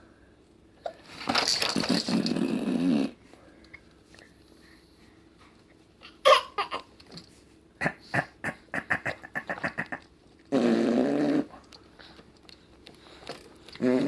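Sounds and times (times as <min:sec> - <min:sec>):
baby blowing a raspberry: 0:10.5 - 0:11.6, 0:13.8 - 0:14.0.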